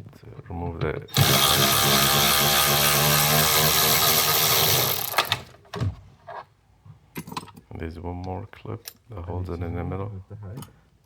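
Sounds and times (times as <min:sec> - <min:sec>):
power drill spinning out bolt: 0:01.1 - 0:05.5.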